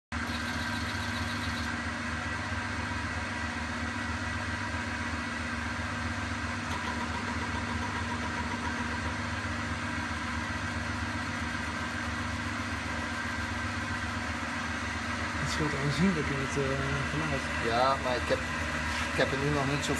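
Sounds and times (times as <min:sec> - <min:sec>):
coffee grinder motor humming: 0:00.1 - 0:02.5, 0:06.6 - 0:19.9.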